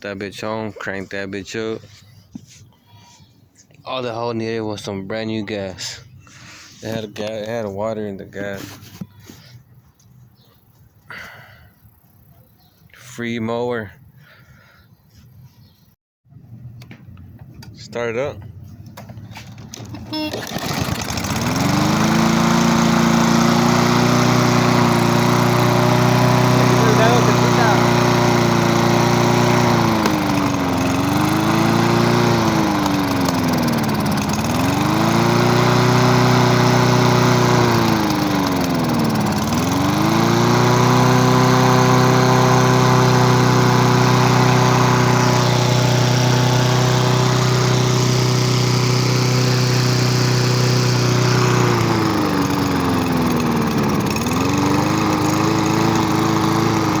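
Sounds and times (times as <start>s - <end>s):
lawnmower engine running unevenly: 19.0s - 57.0s.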